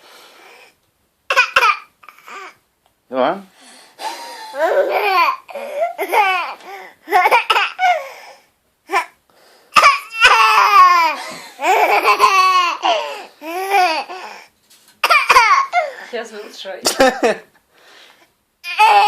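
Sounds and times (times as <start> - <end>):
baby laughing: 4.5 - 8.0, 9.8 - 14.4, 15.0 - 16.0, 18.6 - 19.0.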